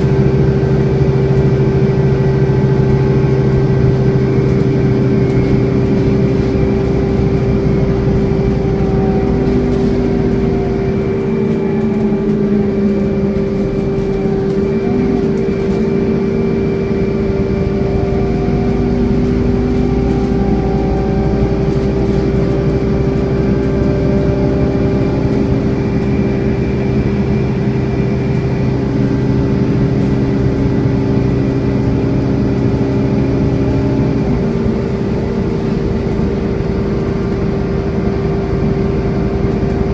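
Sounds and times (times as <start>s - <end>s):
bus engine droning: 0.0s - 39.9s.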